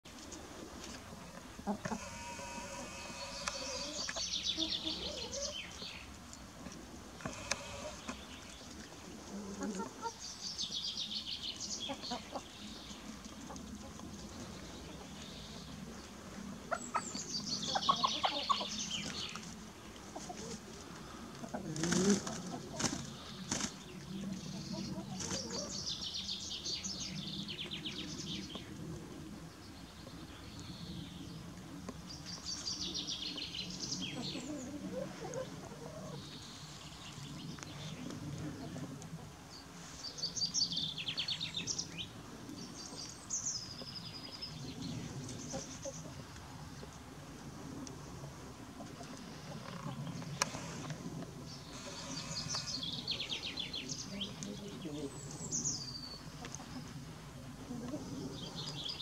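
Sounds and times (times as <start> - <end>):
chickens clucking: 0.2 - 10.4, 11.7 - 26.1, 33.3 - 36.8, 42.9 - 47.0, 47.9 - 51.1, 56.2 - 58.2
steady low hum: 0.4 - 4.9
small birds trilling: 1.7 - 6.5, 7.2 - 8.9, 14.4 - 20.5, 49.2 - 57.0.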